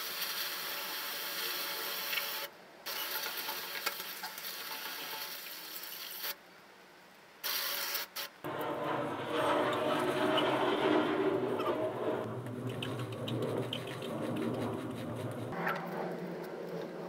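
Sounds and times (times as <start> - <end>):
garden hose spraying water: 0.0 - 6.4.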